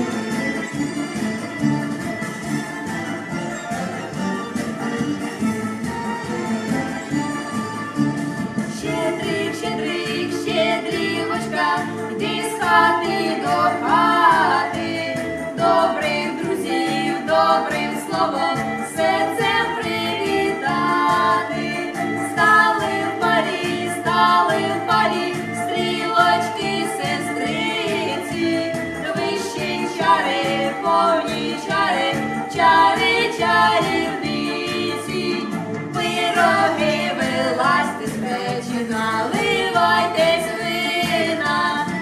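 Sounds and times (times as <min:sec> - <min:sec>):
instrumental accompaniment with beat: 0:00.0 - 0:42.0
women singing a carol: 0:08.7 - 0:42.0.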